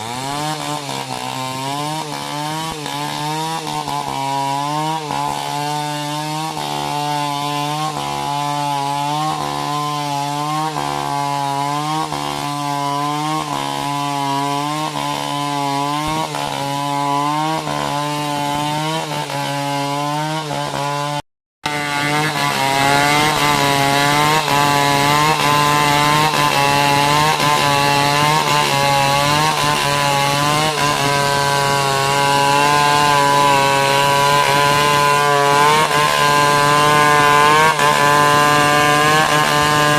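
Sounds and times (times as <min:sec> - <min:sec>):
chainsaw cutting tree trunk: 0:00.0 - 0:39.9.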